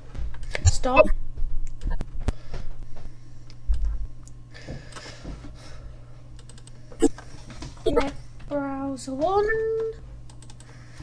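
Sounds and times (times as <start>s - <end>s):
steady low hum: 0.0s - 11.0s
keyboard typing clicks: 6.4s - 6.8s, 9.5s - 10.7s.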